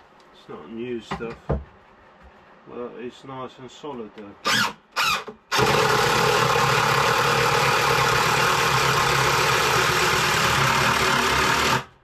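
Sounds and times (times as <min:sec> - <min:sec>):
power drill driving screw: 0:04.4 - 0:11.9.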